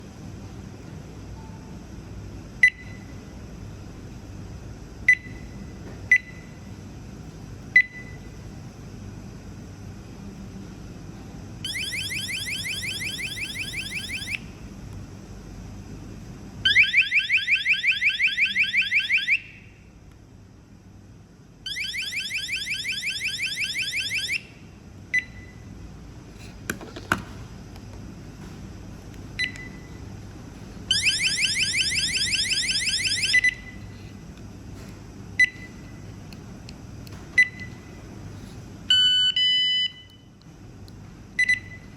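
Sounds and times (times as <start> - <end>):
pulsing electronic alarm siren: 11.7 - 14.4, 16.6 - 19.6, 21.7 - 24.4, 30.9 - 33.6.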